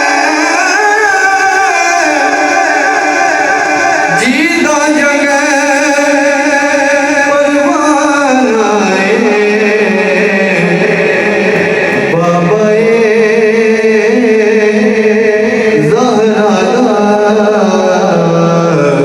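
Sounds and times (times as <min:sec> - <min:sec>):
person singing long notes: 0:08.4 - 0:19.0.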